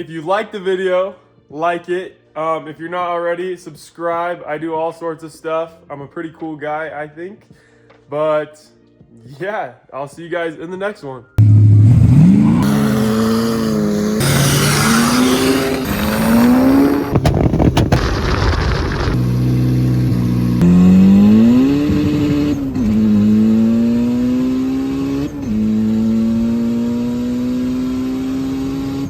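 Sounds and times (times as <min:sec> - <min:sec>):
engines revving: 0:11.4 - 0:29.0.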